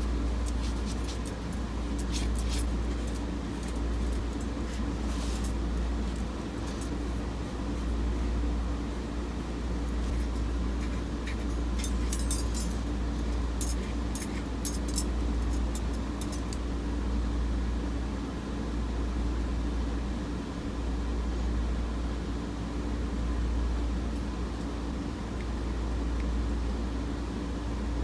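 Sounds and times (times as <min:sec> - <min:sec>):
painting tools clinking: 0:00.0 - 0:16.6.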